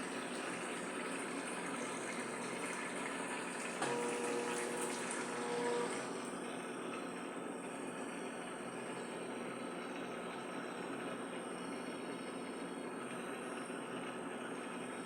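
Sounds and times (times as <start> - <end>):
washing machine water rushing: 0.0 - 15.0.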